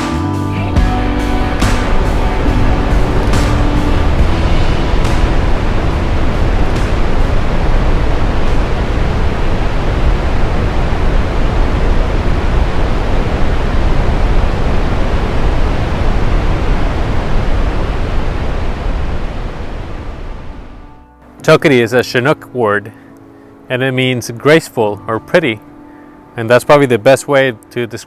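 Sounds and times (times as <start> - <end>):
waterfall roaring: 0.7 - 20.9.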